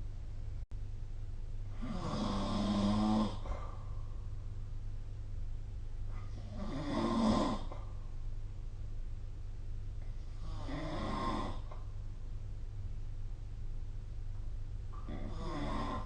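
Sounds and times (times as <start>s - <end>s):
steady low hum: 0.0s - 16.0s
person snoring: 1.7s - 3.8s, 6.2s - 7.9s, 10.3s - 11.9s, 15.0s - 16.0s.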